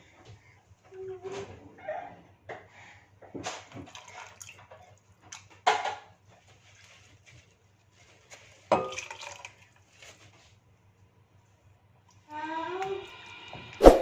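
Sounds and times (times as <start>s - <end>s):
liquid sloshing: 3.5s - 5.6s, 8.3s - 10.5s.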